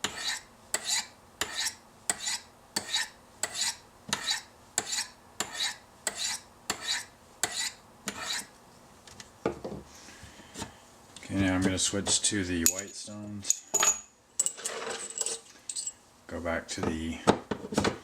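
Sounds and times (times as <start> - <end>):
knife scraping on sharpening stones: 0.0 - 8.5.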